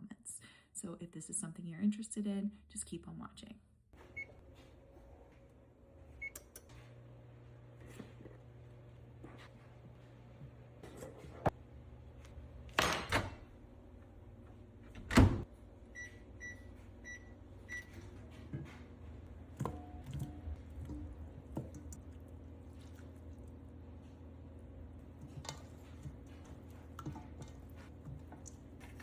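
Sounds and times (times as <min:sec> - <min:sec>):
appliance control panel beeps: 0:04.1 - 0:04.4, 0:06.2 - 0:06.7, 0:15.9 - 0:18.1.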